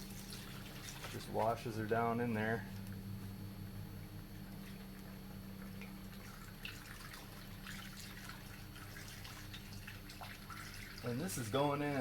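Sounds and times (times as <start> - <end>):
steady low hum: 0.0 - 12.0
small splashes: 0.1 - 1.5, 4.6 - 11.7
liquid pouring and dripping: 4.6 - 11.4.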